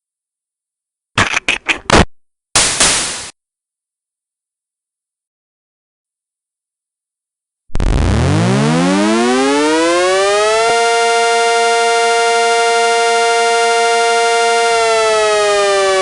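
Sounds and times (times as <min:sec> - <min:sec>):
tornado warning siren wailing: 0:07.8 - 0:16.0.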